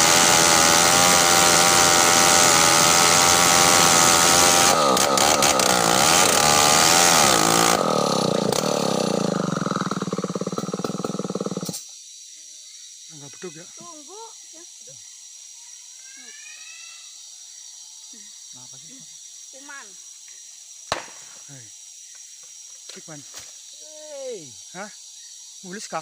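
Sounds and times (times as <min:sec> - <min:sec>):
chainsaw running: 0:00.0 - 0:11.8.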